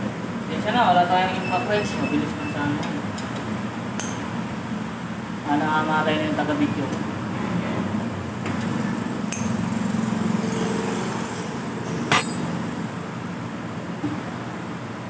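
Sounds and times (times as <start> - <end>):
steady background hum: 11.0 - 15.0
metal tools clinking: 12.1 - 12.6
sharp metal clank: 12.1 - 12.7.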